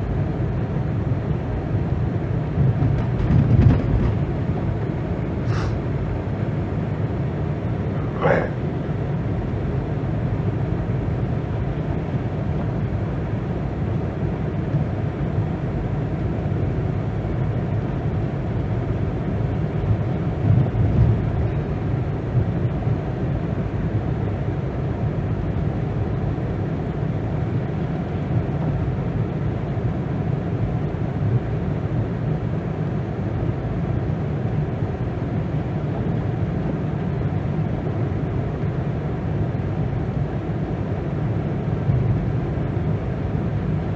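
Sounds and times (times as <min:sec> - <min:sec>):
car engine and tyre rumble: 0:00.0 - 0:43.9.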